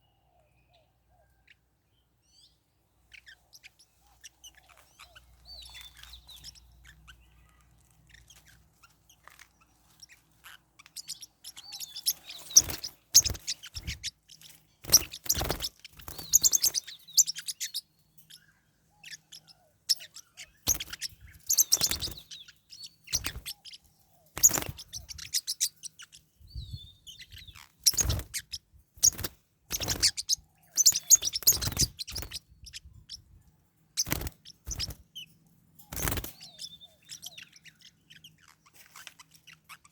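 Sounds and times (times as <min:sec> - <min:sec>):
parrotlets chirping: 0:02.3 - 0:39.9.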